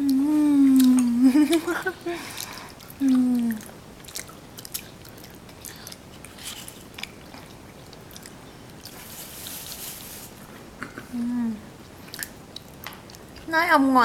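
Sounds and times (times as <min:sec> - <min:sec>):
wet mouth clicks: 0:00.0 - 0:01.7, 0:02.3 - 0:09.0, 0:11.9 - 0:13.5
child chewing and smacking: 0:00.0 - 0:13.5.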